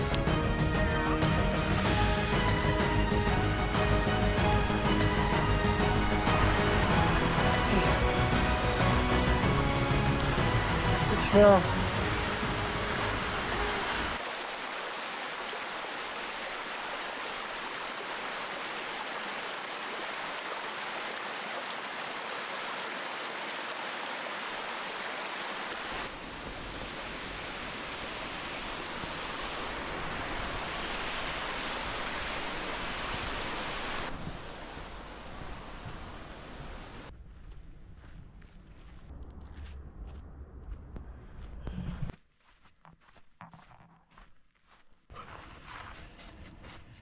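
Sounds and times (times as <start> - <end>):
waterfall rushing: 1.1 - 34.1
deep low rumble: 37.1 - 42.1.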